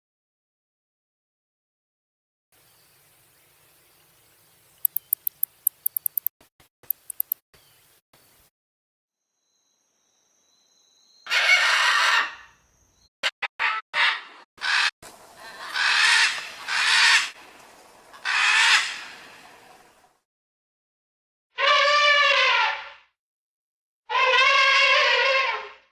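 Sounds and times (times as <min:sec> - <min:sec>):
bird harsh calls: 0:14.0 - 0:17.4.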